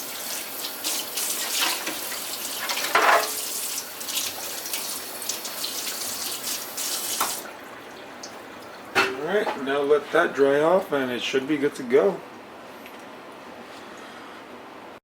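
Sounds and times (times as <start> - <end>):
tap water running and splashing: 0.0 - 9.6.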